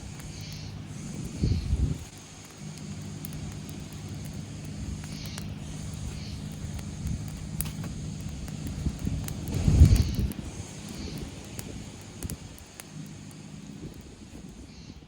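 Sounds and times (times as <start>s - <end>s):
wind buffeting microphone: 0.0s - 2.2s, 3.0s - 15.0s
faint ticks: 0.0s - 14.9s
low engine drone: 0.0s - 15.0s.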